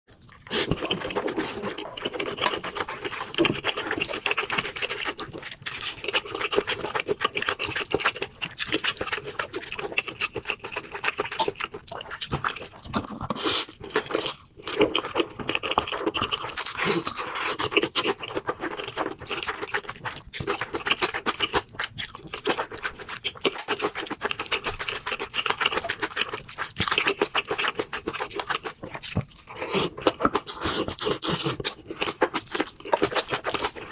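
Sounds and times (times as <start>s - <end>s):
person chewing food: 0.1s - 33.9s
wet mouth clicks and smacking: 0.1s - 33.9s.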